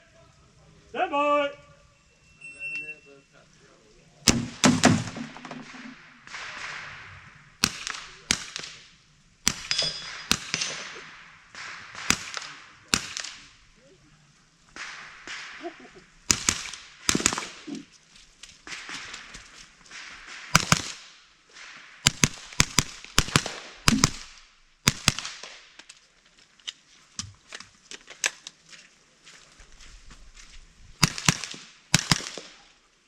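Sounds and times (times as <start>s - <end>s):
rifle shots cracking: 4.3s - 13.6s, 14.7s - 17.8s, 18.6s - 25.8s, 31.0s - 32.7s.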